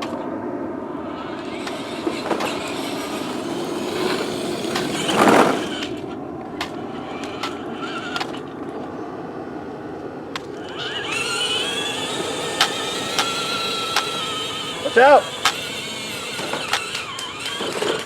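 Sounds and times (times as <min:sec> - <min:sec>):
plastic toy car wheels rolling: 0:01.2 - 0:08.9, 0:10.4 - 0:18.0
scraping: 0:01.3 - 0:08.4, 0:10.5 - 0:18.0
clicks: 0:10.3 - 0:18.0.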